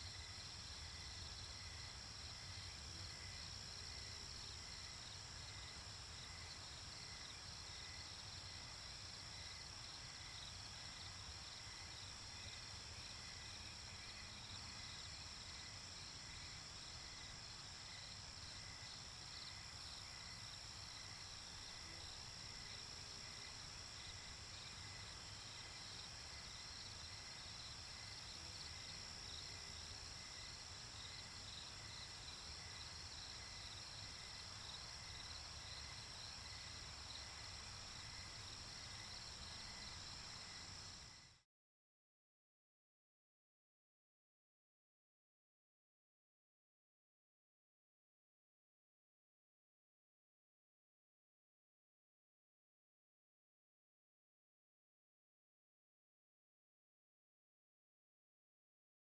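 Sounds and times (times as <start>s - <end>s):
pulsing cricket chirp: 0.0s - 41.4s.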